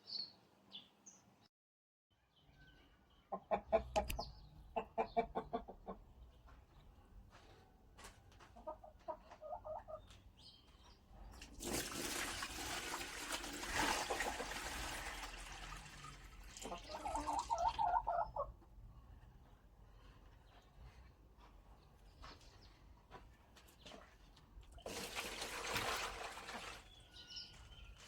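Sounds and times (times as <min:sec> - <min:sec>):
chickens clucking: 0:03.2 - 0:06.5, 0:08.3 - 0:10.2, 0:14.0 - 0:14.8, 0:16.6 - 0:18.7.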